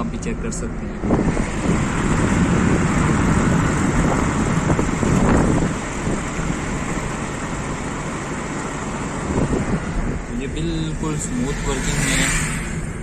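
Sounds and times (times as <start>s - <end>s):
car engine: 0.0s - 13.0s
wind noise: 0.7s - 7.9s, 8.7s - 10.7s.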